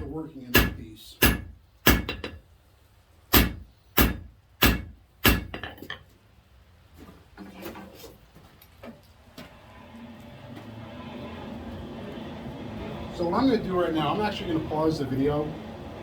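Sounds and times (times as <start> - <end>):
hammer striking steel on anvil: 0.5 - 2.4, 3.3 - 5.8.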